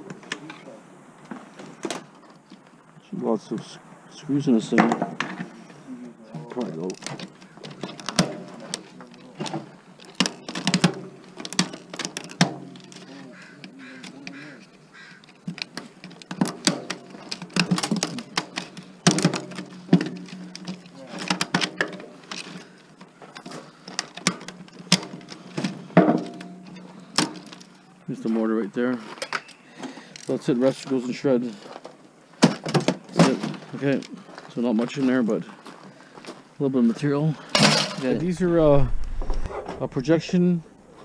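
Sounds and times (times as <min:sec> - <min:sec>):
metal and plastic parts rattling: 0:06.5 - 0:13.2, 0:15.2 - 0:28.4, 0:31.6 - 0:34.2, 0:37.4 - 0:40.4.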